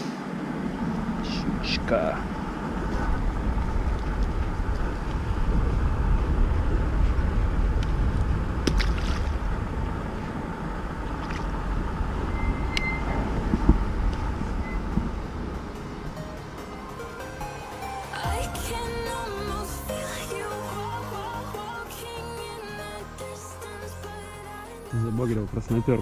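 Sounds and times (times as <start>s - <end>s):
wind buffeting microphone: 0.0s - 17.1s.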